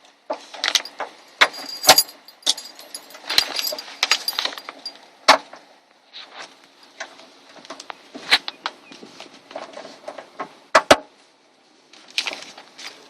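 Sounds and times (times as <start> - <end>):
metal parts and tools clinking: 0.6 - 5.0.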